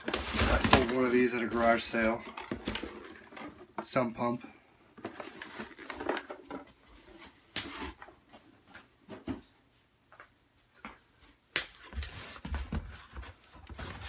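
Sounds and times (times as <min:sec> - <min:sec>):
cardboard packaging rustling: 0:00.0 - 0:04.0, 0:05.0 - 0:08.2, 0:11.8 - 0:14.0.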